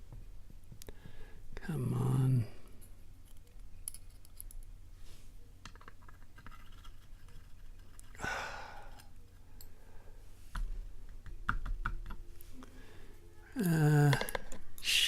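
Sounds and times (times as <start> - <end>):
person sighing: 8.2 - 9.1, 12.7 - 15.0.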